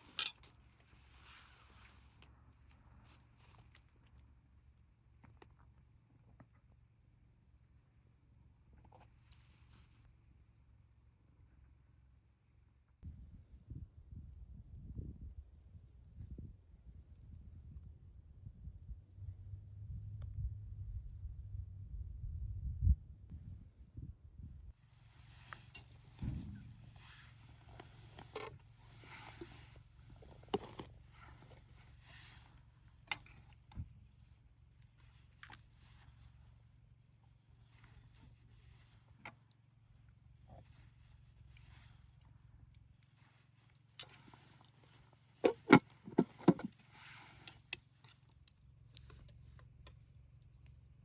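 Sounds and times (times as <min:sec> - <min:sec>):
low steady hum: 0:00.0 - 0:51.0
soft low thump: 0:26.1 - 0:26.8.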